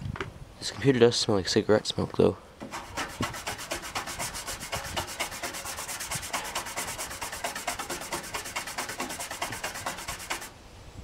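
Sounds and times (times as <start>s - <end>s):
toothbrush scrubbing plastic: 2.7s - 10.5s.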